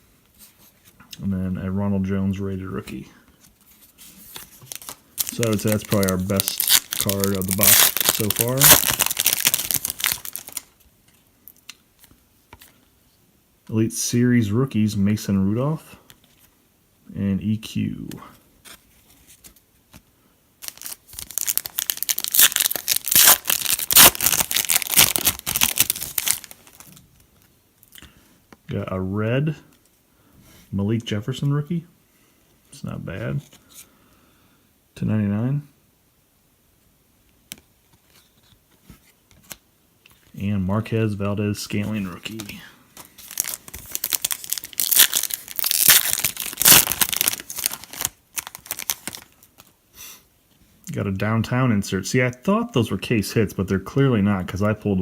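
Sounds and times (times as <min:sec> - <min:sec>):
foil wrapper tearing and crinkling: 0:04.6 - 0:10.7, 0:20.6 - 0:27.0, 0:43.2 - 0:49.7.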